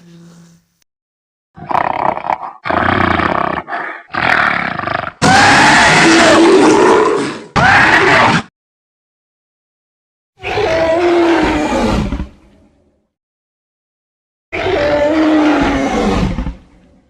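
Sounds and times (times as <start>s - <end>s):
monster roars: 1.6s - 8.5s, 10.4s - 12.3s, 14.6s - 16.7s.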